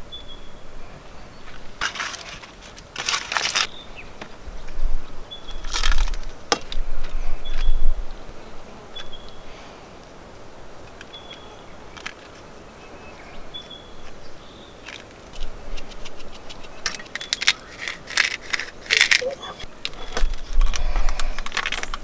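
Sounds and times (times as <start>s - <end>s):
packaging rustling and crinkling: 1.8s - 3.7s, 5.7s - 6.3s, 16.2s - 22.0s.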